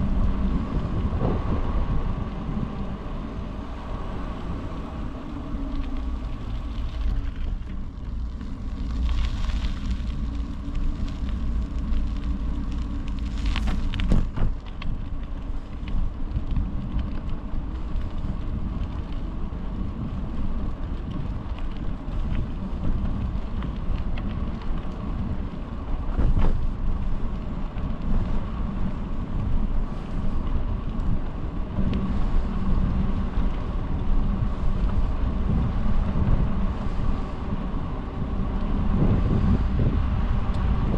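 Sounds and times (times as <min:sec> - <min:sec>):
bicycle tyre rumble: 0:00.0 - 0:40.9
wind rushing over microphone: 0:00.0 - 0:40.9
bike knocking over bumps: 0:13.3 - 0:15.0.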